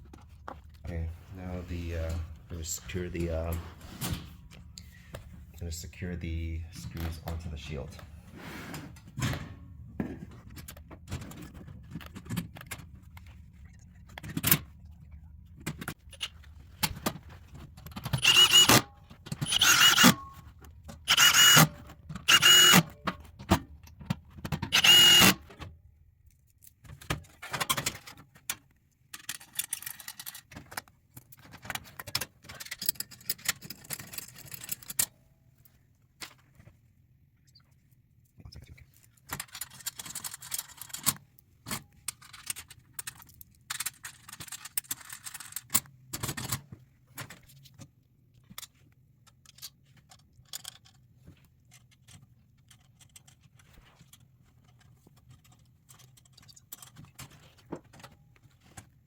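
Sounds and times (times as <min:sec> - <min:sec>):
cordless drill driving screws: 0:18.2 - 0:18.8, 0:19.4 - 0:20.2, 0:21.1 - 0:22.9, 0:24.7 - 0:25.4
metal parts clinking: 0:29.1 - 0:30.6, 0:31.4 - 0:35.1, 0:39.2 - 0:46.5.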